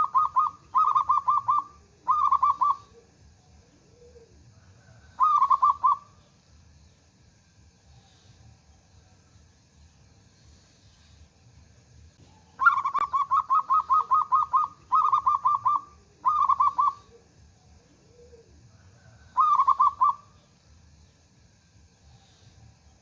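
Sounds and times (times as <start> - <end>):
dove cooing: 0.0 - 6.2, 12.2 - 20.4.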